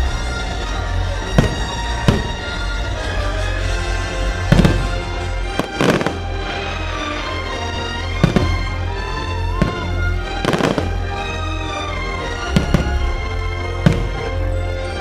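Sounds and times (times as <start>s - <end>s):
music playing: 0.0s - 15.0s
fireworks bursting with bangs: 0.4s - 3.2s, 4.3s - 6.6s, 8.0s - 11.4s, 12.3s - 14.6s.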